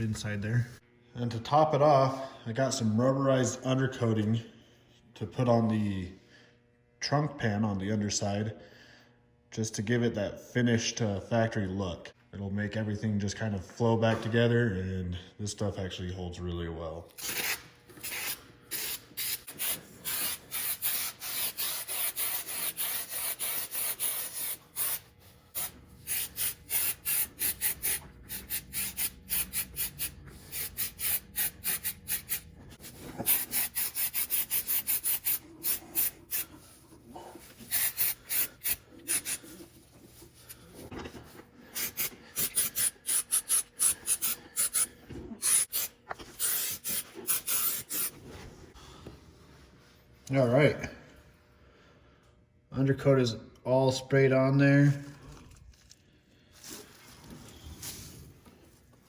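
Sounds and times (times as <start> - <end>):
hissing spray bursts: 18.0 - 36.4, 37.7 - 39.4, 45.4 - 48.1.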